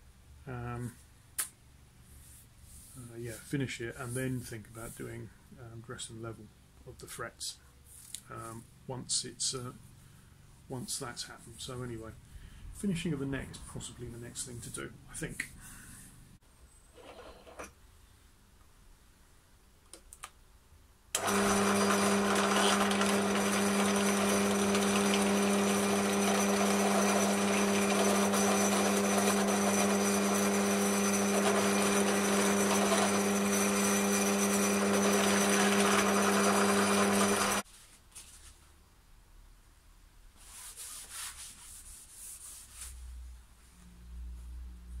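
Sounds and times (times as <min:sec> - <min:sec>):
electric sander on wood: 0:21.2 - 0:37.6.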